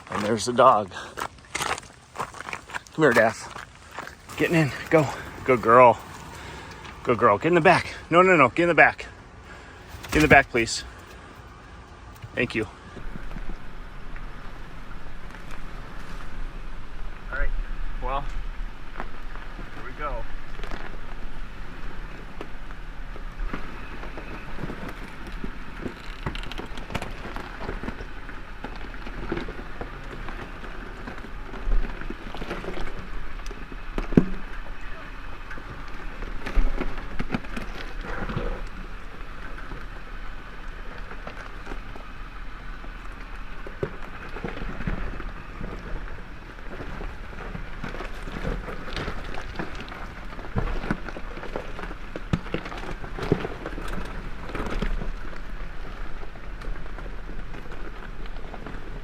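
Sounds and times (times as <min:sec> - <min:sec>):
tyres crunching over rock and gravel: 0:00.0 - 0:13.7, 0:18.9 - 0:59.0
knocks and clunks: 0:09.0 - 0:12.5.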